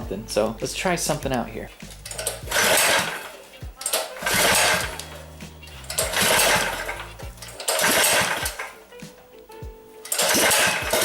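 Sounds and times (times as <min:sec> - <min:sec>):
background music with bass line: 0:00.0 - 0:11.0
small engine surging: 0:04.1 - 0:08.6.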